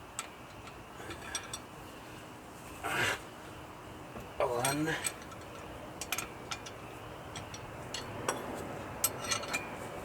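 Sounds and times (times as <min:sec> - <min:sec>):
small metallic clinks: 0:00.2 - 0:01.7, 0:04.5 - 0:09.8.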